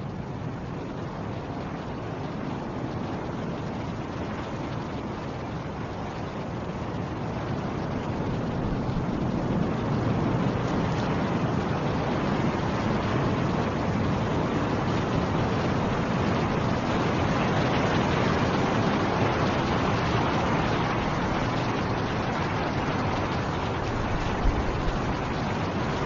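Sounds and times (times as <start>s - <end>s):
snowstorm wind rushing: 6.6s - 26.0s.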